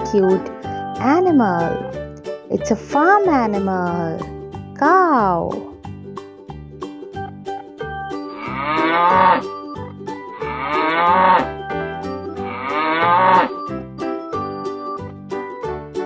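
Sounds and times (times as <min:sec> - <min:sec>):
children's music with steady beat: 0:00.0 - 0:16.0
cow mooing: 0:08.4 - 0:09.5, 0:10.4 - 0:11.6, 0:12.4 - 0:13.5.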